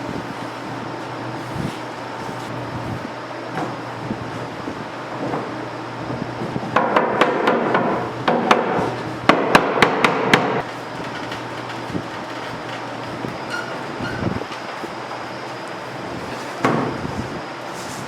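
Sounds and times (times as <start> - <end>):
sharp wooden knocks: 6.8 - 10.6.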